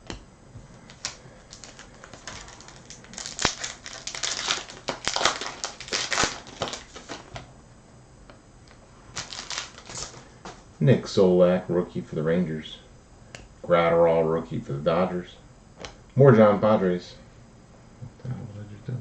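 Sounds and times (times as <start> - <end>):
pack wrapper crinkling: 0.8 - 7.5, 9.1 - 10.3
trading cards clicking and rustling: 0.8 - 7.5, 9.2 - 10.6.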